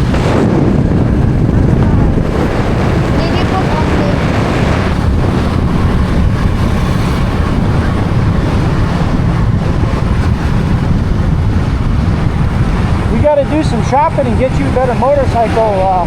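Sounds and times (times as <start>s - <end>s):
road and vehicle noise: 0.0s - 16.0s
wind buffeting microphone: 0.0s - 16.0s.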